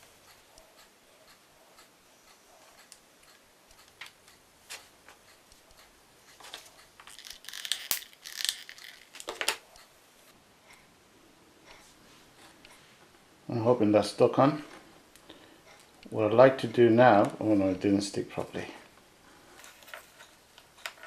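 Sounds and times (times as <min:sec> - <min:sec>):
small parts ticking on tabletop: 0:00.2 - 0:04.4, 0:05.1 - 0:09.9
crinkly rustling: 0:06.4 - 0:09.6.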